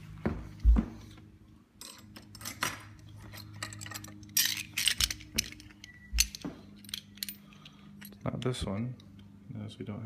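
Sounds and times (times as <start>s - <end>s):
small metal parts clinking: 1.8s - 8.6s.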